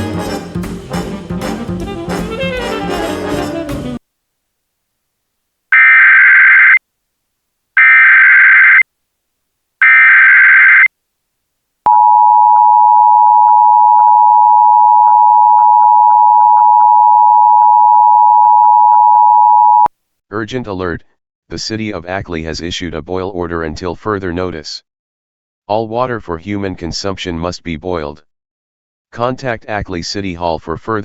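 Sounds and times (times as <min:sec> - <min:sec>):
two-tone attention signal: 0:11.9 - 0:19.9.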